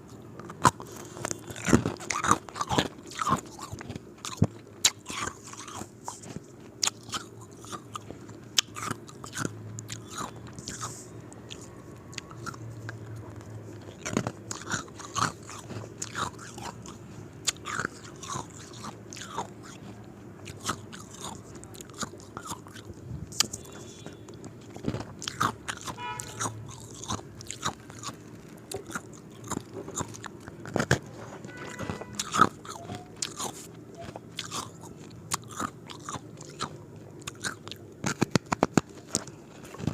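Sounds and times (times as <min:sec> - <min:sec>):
ice cubes crunching: 0:13.9 - 0:19.8, 0:20.4 - 0:24.0, 0:24.7 - 0:31.0, 0:31.7 - 0:39.9.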